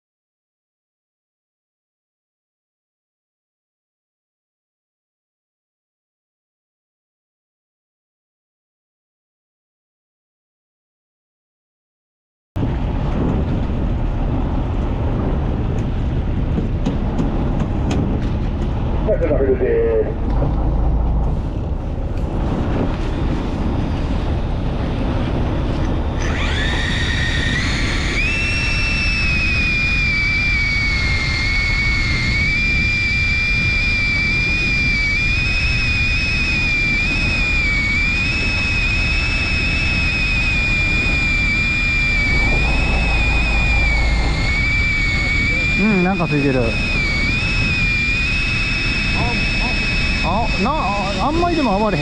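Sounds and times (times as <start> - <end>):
boat rumble: 12.6 - 52.0
wind: 12.6 - 52.0
electric fishing reel whining: 26.1 - 52.0.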